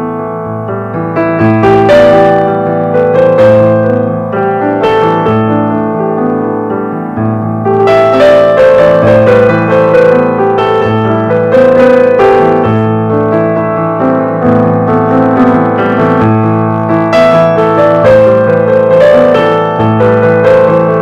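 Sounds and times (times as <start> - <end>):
gentle piano music: 0.0 - 21.0.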